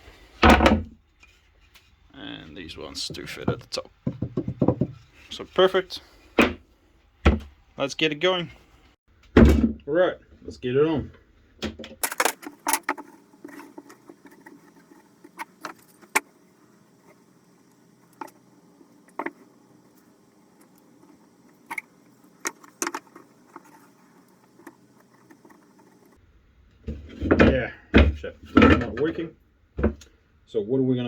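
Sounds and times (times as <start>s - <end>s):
wooden shelf boards knocking: 0.4s - 1.0s, 3.1s - 5.1s, 6.4s - 6.6s, 7.2s - 7.5s, 26.9s - 29.2s, 29.8s - 30.0s.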